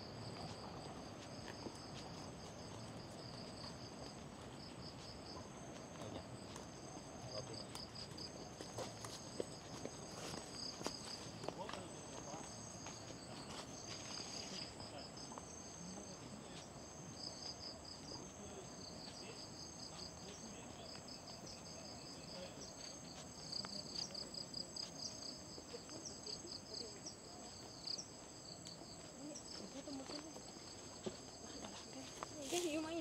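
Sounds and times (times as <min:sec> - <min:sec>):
crickets trilling: 0:00.0 - 0:33.0.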